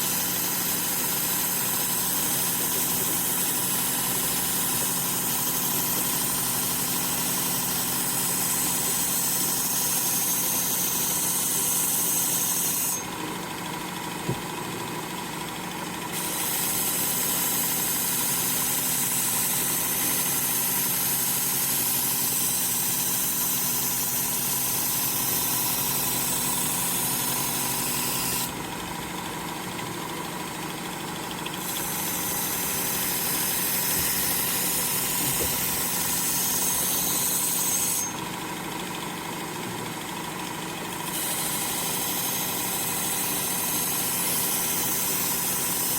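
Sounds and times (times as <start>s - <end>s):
knife blade grinding hiss: 0.0s - 2.5s, 3.1s - 13.1s, 16.2s - 28.5s, 31.6s - 38.2s
belt sharpener motor hum: 0.0s - 13.2s, 16.1s - 30.2s, 31.0s - 38.4s, 40.8s - 45.9s.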